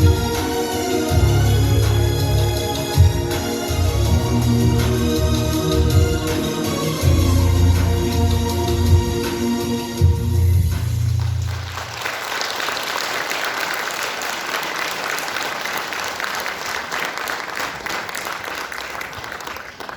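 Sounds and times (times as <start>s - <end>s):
audience applauding: 10.8s - 19.9s.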